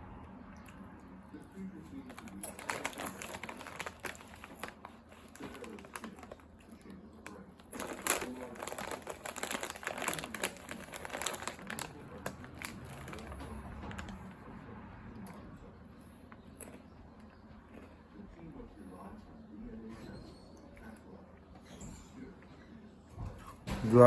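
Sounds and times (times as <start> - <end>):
clicks and crinkling rustle: 2.0 - 14.3.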